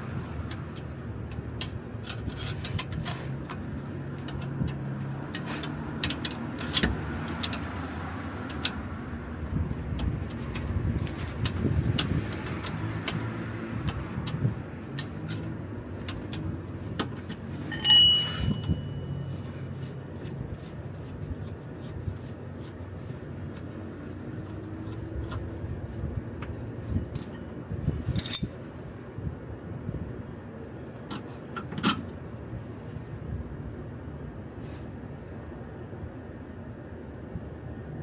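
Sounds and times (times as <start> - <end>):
low road and engine rumble: 0.0 - 38.0
suspension knocking and clicking: 0.3 - 28.5.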